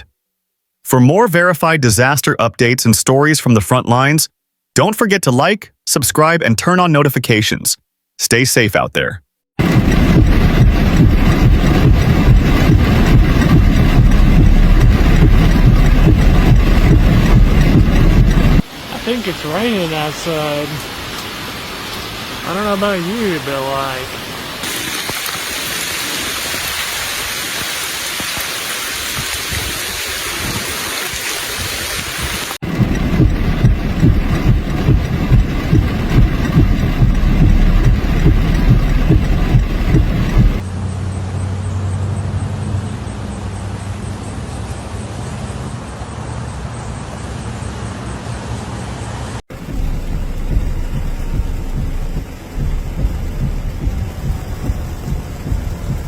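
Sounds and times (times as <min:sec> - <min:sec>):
vehicle engine rumble: 0:09.6 - 0:25.3, 0:32.0 - 0:56.0
rain falling: 0:09.6 - 0:40.6, 0:49.5 - 0:56.0.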